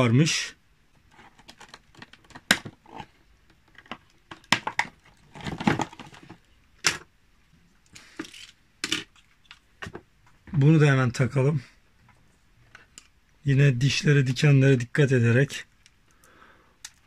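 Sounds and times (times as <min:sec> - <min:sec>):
plastic and cardboard rustling: 0:01.0 - 0:07.1.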